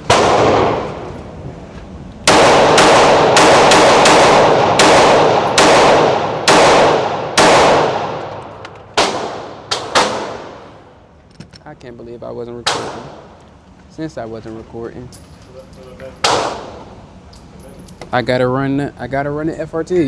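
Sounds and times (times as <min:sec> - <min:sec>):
pistol shots echoing indoors: 0:00.0 - 0:01.1, 0:02.2 - 0:10.9, 0:16.2 - 0:16.9.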